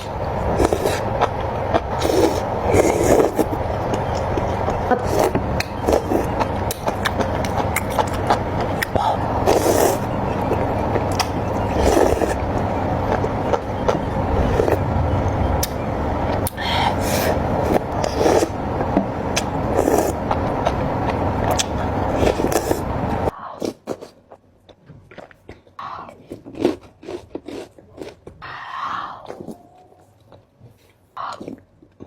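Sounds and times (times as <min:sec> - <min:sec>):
mouth clicks: 0:00.0 - 0:18.6
wet chewing: 0:00.0 - 0:32.0.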